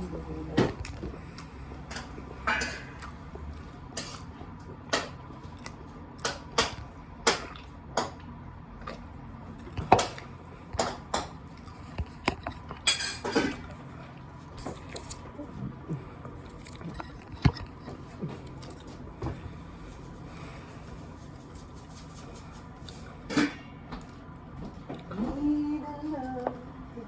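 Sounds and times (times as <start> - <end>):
dishes and cutlery clinking: 1.9 - 3.1, 12.2 - 13.7.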